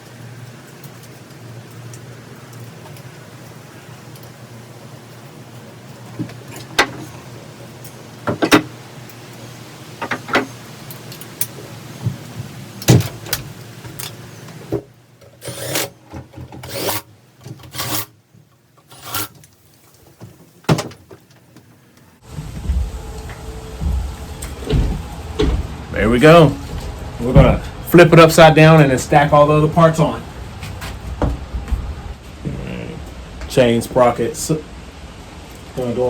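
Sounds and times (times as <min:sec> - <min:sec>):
scraping and rubbing: 0:15.4 - 0:15.9, 0:16.6 - 0:18.2, 0:18.8 - 0:19.4
steady low hum: 0:22.1 - 0:36.0.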